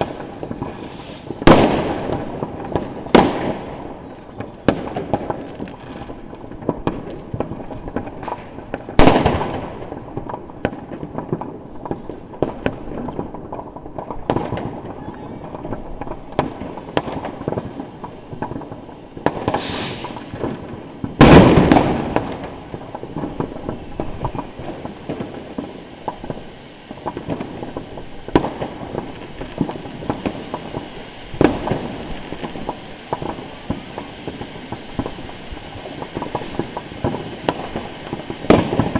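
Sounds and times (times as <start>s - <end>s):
fireworks hissing and popping: 0.0s - 38.9s
loud firework bangs: 0.0s - 38.9s
short falling whistles: 19.6s - 20.2s, 29.2s - 31.2s, 33.8s - 36.5s.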